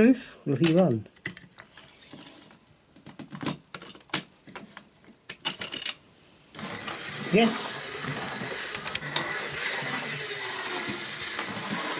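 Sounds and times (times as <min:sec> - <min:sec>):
model locomotive motor running: 0:06.6 - 0:11.9.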